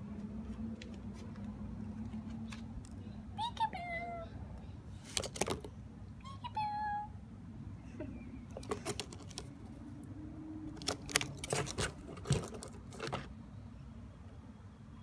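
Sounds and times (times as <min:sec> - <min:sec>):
parrot scratching in cardboard boxes: 0:08.6 - 0:09.6, 0:10.7 - 0:13.3.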